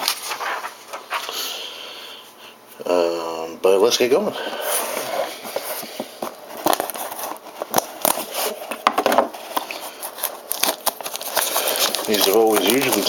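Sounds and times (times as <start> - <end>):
plastic wrapping crinkling: 4.5 - 13.0
cardboard being handled: 4.6 - 13.0.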